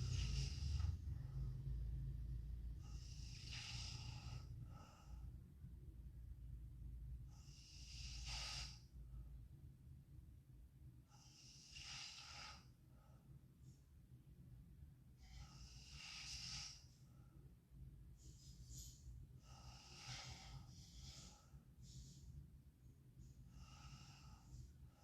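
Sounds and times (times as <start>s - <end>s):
girl breathing noisily in sleep: 0.0s - 2.1s, 2.7s - 5.6s, 7.2s - 9.4s, 11.0s - 13.4s, 15.1s - 17.5s, 18.1s - 22.5s, 23.2s - 25.0s
low steady rumble: 0.0s - 11.8s, 12.6s - 25.0s.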